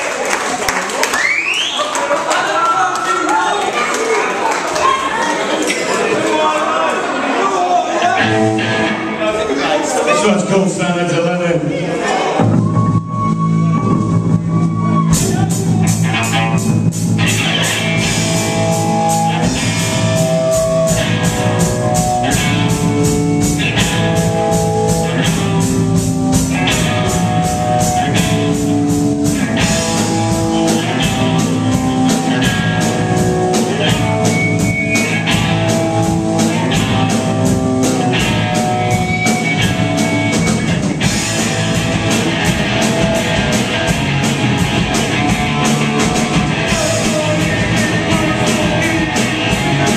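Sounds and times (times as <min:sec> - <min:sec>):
rock band playing live: 0:07.9 - 0:49.9
electric guitar: 0:08.1 - 0:09.6, 0:12.4 - 0:49.9
drum kit beat: 0:12.4 - 0:49.9.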